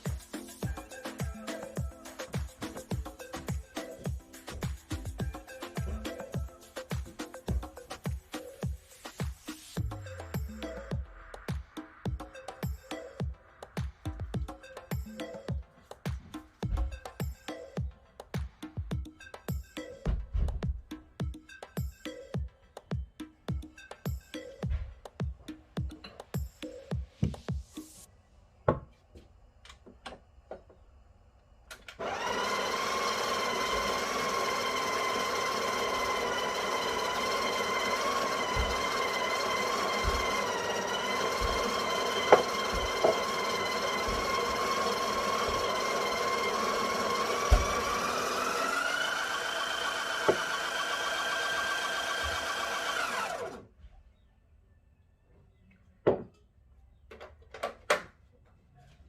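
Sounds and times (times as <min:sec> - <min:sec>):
coffee grinder motor whine: 0:32.0 - 0:53.7.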